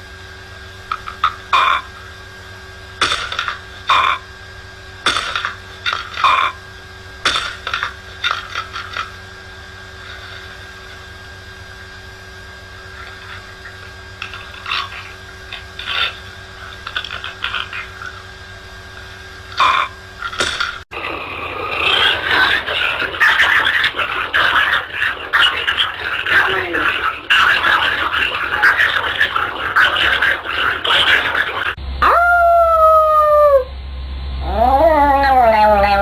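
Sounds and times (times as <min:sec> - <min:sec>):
faint steady hum: 0:00.0 - 0:36.0
animal calling in pitched bursts: 0:32.0 - 0:33.8, 0:34.4 - 0:36.0.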